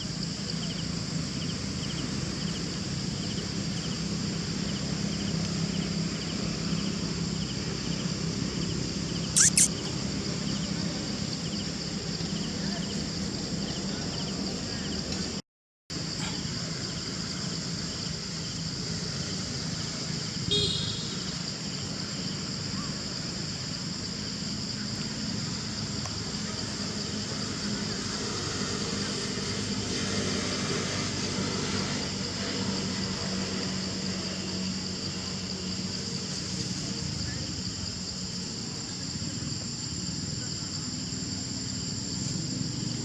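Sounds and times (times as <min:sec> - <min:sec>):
short sharp sound: 0:09.4 - 0:09.7.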